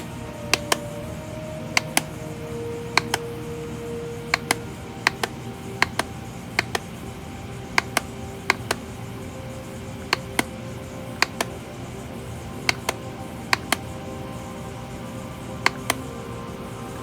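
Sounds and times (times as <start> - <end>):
sharp clicks in pairs: 0.0 - 1.0, 1.8 - 2.2, 3.0 - 3.3, 4.3 - 7.0, 7.8 - 8.9, 10.1 - 10.6, 11.2 - 11.6, 12.7 - 13.9, 15.7 - 16.1
faint steady music: 0.0 - 17.0.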